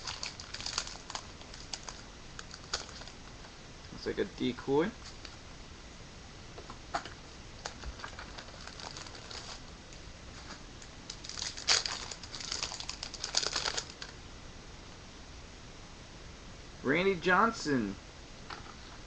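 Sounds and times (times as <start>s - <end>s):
packaging crinkling and rustling: 0.0s - 3.4s, 7.6s - 9.7s, 10.3s - 14.2s.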